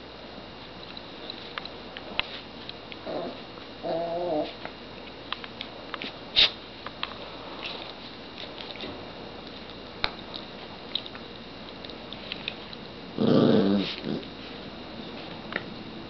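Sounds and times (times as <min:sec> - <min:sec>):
small dog vocalizing: 0:03.0 - 0:04.6.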